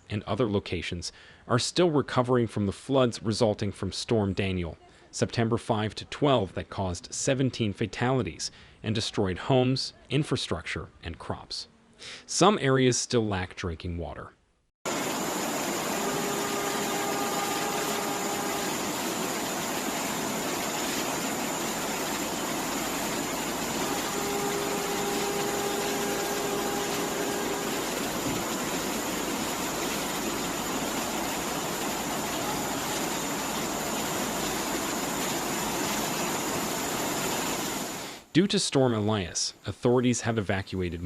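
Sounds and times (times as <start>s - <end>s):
steady rushing noise: 14.9s - 38.3s.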